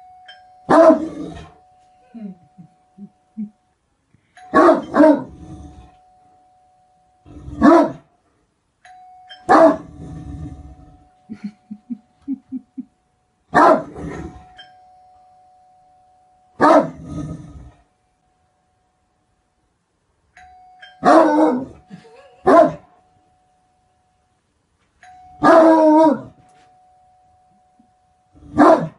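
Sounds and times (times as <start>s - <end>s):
dog barking deeply: 7.6s - 8.0s, 13.6s - 14.1s, 22.5s - 22.8s, 28.6s - 28.9s.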